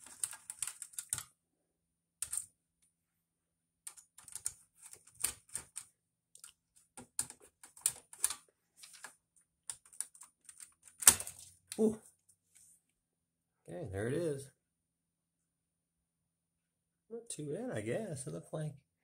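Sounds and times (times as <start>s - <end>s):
clicks and clatters from computer: 0.0s - 1.3s, 2.2s - 2.5s, 3.9s - 11.8s.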